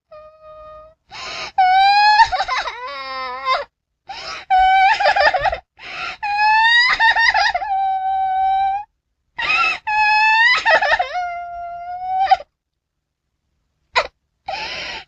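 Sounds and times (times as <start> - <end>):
baby crying: 1.6 - 3.7, 6.2 - 12.5.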